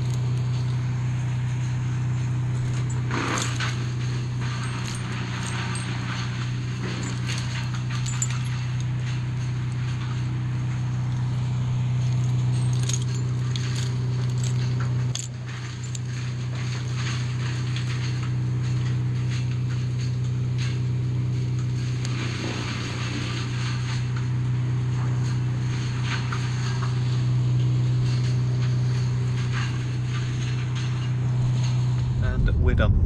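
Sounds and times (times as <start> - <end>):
engine humming: 0.0 - 33.0
light rattles and clicks: 2.5 - 11.3, 12.0 - 20.9.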